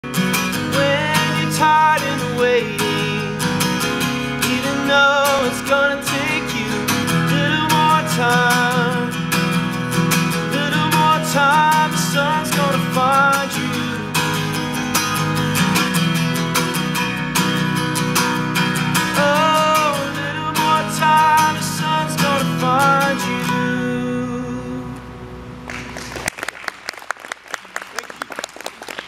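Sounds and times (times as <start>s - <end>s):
person singing: 0.0s - 9.6s, 10.3s - 14.8s, 18.9s - 25.1s
acoustic guitar strumming: 0.0s - 26.2s.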